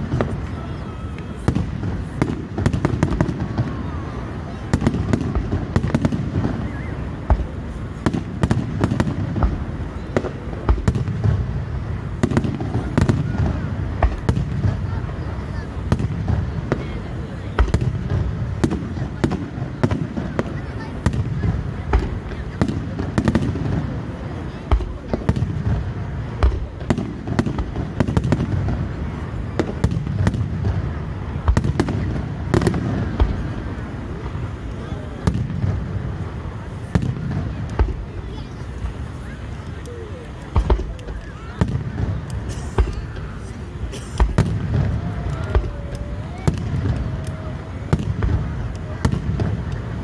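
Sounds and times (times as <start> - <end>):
fireworks bangs and crackles: 0.0 - 50.0.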